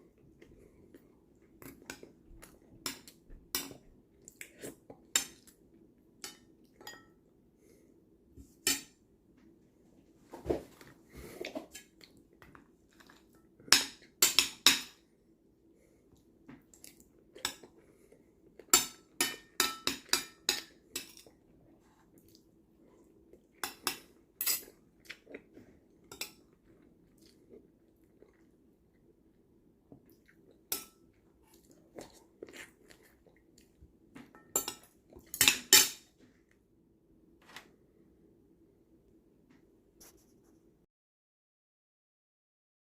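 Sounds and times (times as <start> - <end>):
metal utensils clinking on dishes: 6.2 - 7.2, 34.4 - 36.0.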